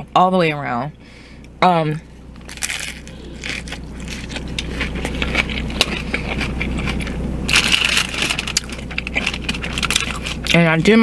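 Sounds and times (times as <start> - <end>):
chewing crunchy taco: 1.4 - 11.0.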